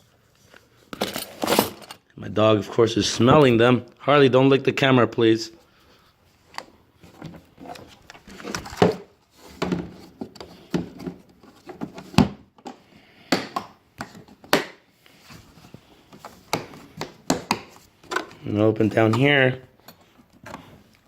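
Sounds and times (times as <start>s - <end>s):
tool case and tools rattling: 0.9s - 2.1s.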